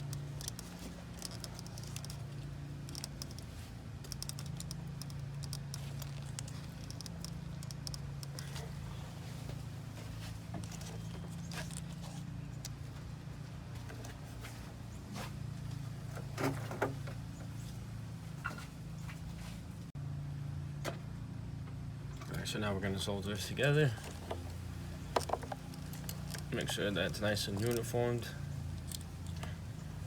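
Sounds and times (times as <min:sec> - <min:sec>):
copper wire twisting clicks: 0:00.0 - 0:08.6, 0:24.0 - 0:29.6.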